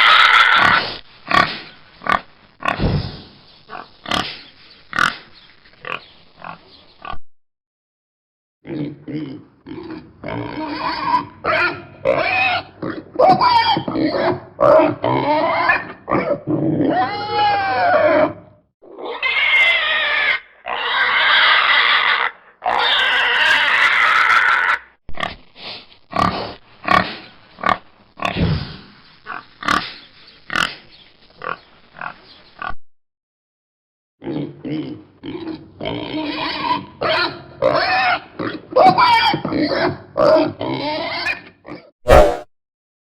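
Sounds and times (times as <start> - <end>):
pig squealing: 0.0 - 2.8, 3.7 - 4.3, 4.9 - 5.2, 9.7 - 25.4, 26.1 - 28.4, 29.3 - 29.9, 30.5 - 30.8, 34.2 - 41.5
pig grunting: 0.0 - 5.3, 8.6 - 18.4, 26.1 - 30.8, 34.2 - 42.4.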